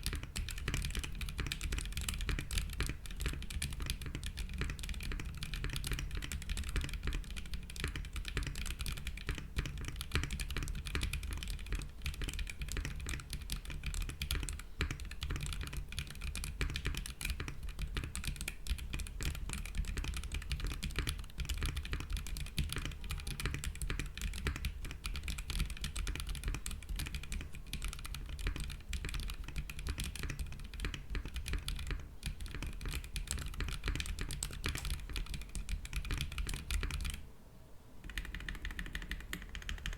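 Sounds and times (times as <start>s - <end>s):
fast typing on mechanical keyboard: 0.0s - 37.2s, 38.0s - 39.9s.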